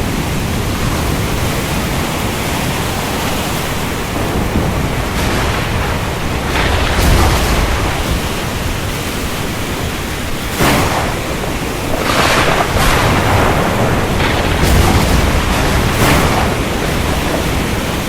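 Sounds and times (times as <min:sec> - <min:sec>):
heavy rain falling: 0:00.0 - 0:18.0
low rumble: 0:10.6 - 0:18.0.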